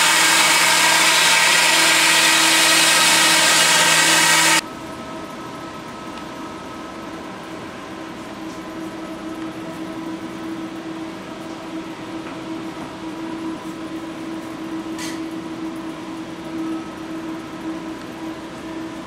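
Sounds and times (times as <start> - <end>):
milling spindle whining: 0.0 - 4.6.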